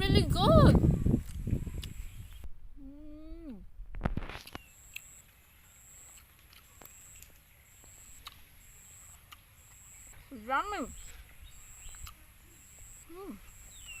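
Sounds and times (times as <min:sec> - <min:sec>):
person humming: 0:02.8 - 0:03.7, 0:13.1 - 0:13.5
soft clicks of eating: 0:06.0 - 0:08.5, 0:09.2 - 0:09.9, 0:11.8 - 0:12.2.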